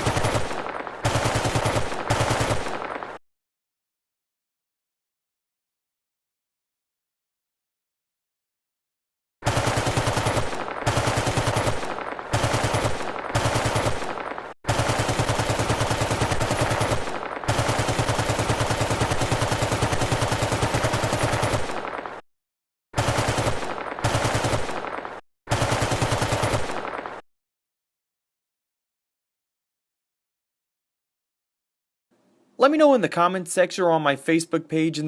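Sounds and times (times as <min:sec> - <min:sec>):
machine-gun fire bursts: 0:00.0 - 0:03.2, 0:09.4 - 0:22.2, 0:23.0 - 0:27.2.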